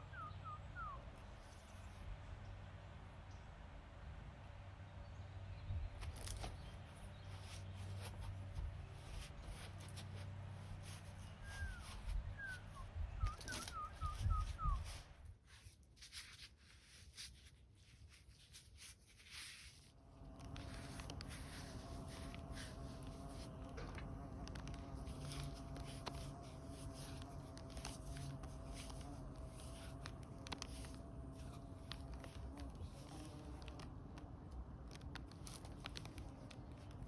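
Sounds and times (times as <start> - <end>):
bird chirping: 0.0 - 2.6, 11.0 - 15.0
scattered clicks: 20.0 - 37.0.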